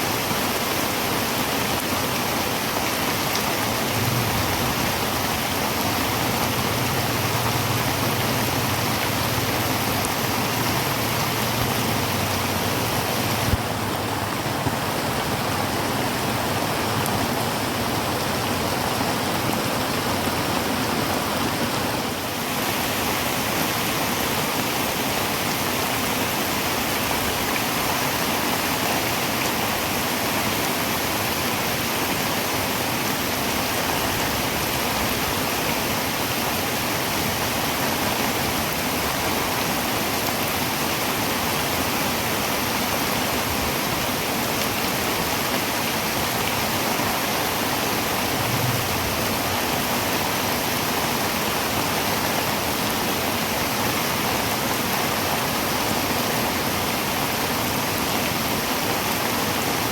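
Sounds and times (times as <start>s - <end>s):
heavy rain on a tin roof: 0.0s - 59.9s.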